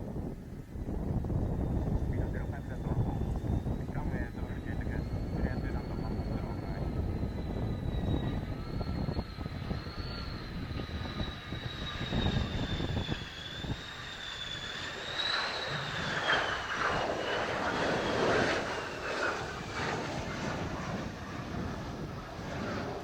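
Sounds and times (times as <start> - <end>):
jet engine whining: 0.0 - 23.0
wind buffeting microphone: 0.0 - 23.0
jet noise rushing: 1.6 - 23.0.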